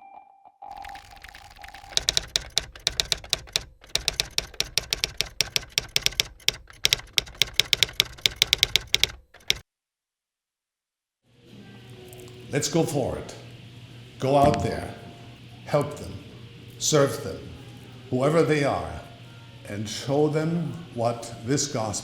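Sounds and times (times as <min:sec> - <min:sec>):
sharp rapid clicks: 0:00.7 - 0:09.6.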